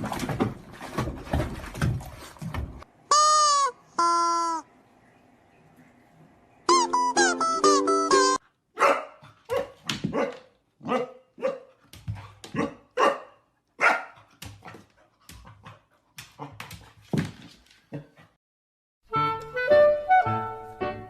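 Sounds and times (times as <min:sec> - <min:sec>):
dog barking: 0:08.8 - 0:11.7, 0:12.5 - 0:14.3.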